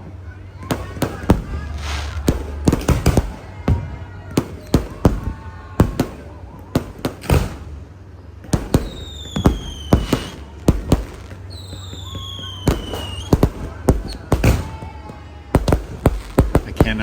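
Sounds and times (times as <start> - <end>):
fireworks banging: 0.6 - 17.0
firework whistle falling in pitch: 8.8 - 10.5, 11.5 - 13.4.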